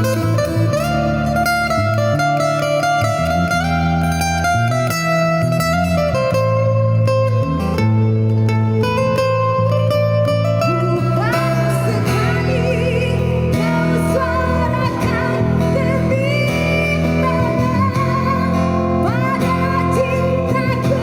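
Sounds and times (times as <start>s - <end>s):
bass: 0.0s - 21.0s
guitar: 0.0s - 21.0s
person singing with vibrato: 10.5s - 21.0s.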